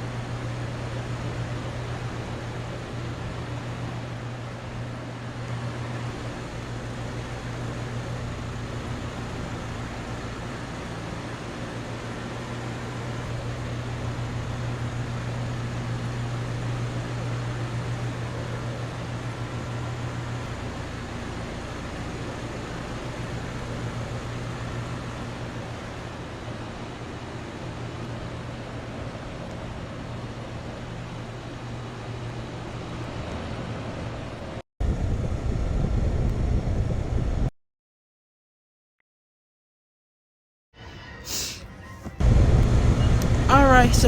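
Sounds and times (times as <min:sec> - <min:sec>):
compressor hum: 0:00.0 - 0:33.0, 0:41.3 - 0:44.0
condenser fan rushing: 0:00.0 - 0:37.4, 0:41.3 - 0:44.0.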